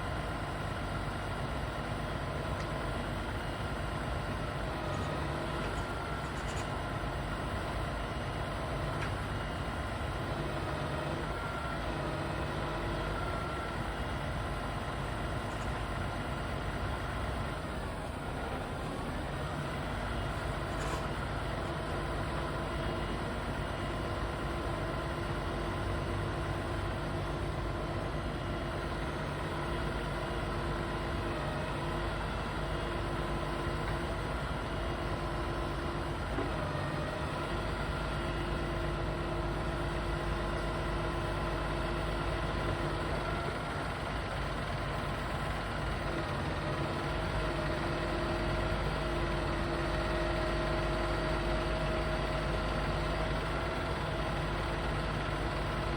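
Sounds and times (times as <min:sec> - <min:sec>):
heavy vehicle engine running: 0:00.0 - 0:55.9.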